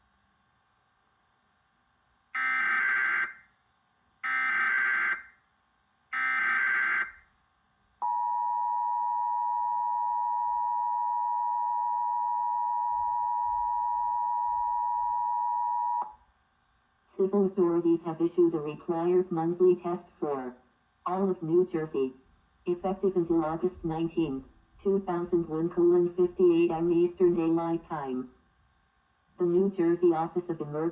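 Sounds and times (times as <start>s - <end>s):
steady two-tone alert signal: 2.4s - 3.4s, 4.3s - 5.3s, 6.2s - 7.2s, 8.0s - 16.2s
warbling data tone bursts: 8.0s - 16.2s.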